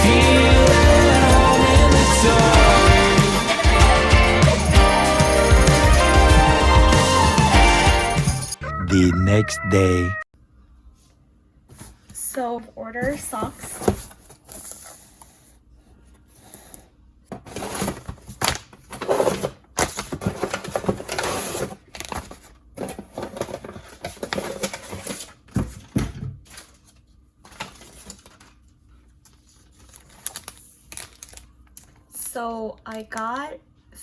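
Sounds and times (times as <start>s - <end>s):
parcel packaging rustling: 26.4s - 32.0s.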